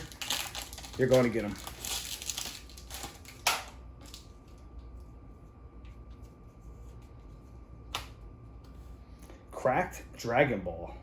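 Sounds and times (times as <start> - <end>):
foil wrapper crinkling: 0.0 - 4.3.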